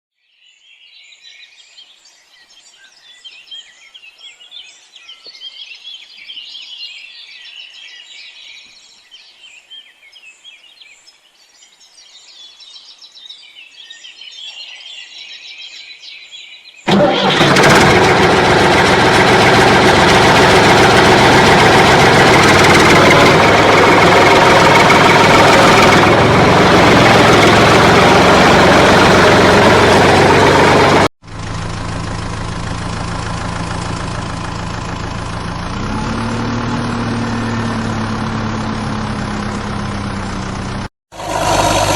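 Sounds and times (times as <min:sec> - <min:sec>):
birds chirping: 0:00.3 - 0:16.9
engine idling: 0:16.9 - 0:41.9.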